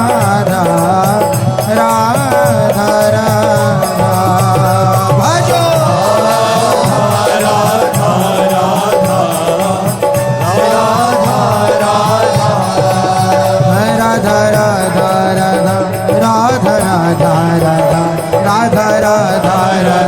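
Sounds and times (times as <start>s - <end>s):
person singing: 0.0s - 20.0s
steady drone: 3.8s - 18.4s.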